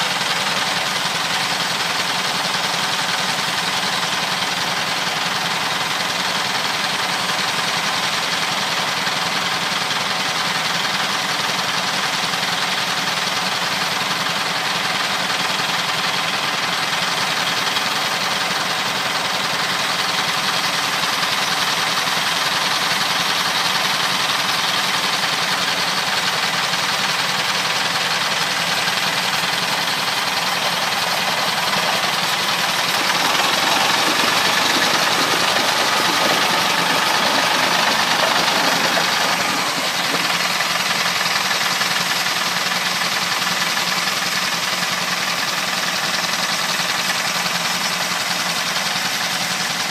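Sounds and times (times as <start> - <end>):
sawmill engine running: 28.3 - 41.8.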